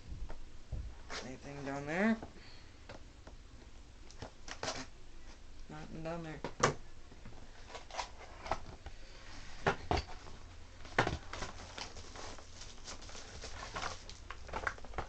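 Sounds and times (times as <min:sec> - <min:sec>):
packaging rustling: 0:10.1 - 0:15.0.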